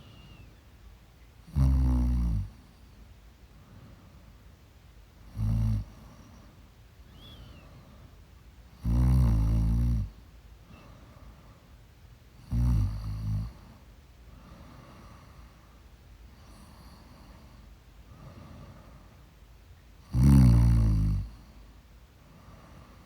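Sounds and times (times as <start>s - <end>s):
quiet breathing: 0.0s - 23.0s
woman snoring: 1.5s - 2.5s, 5.4s - 5.9s, 8.8s - 10.1s, 12.5s - 13.5s, 20.1s - 21.3s.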